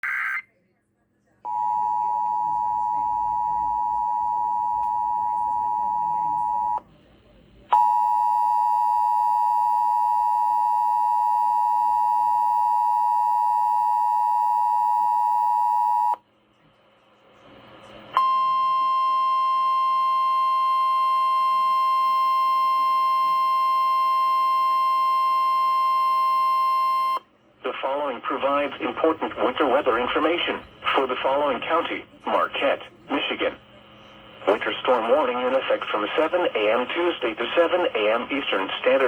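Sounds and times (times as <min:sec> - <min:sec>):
steady alarm tone: 0:07.8 - 0:16.2, 0:18.2 - 0:27.2.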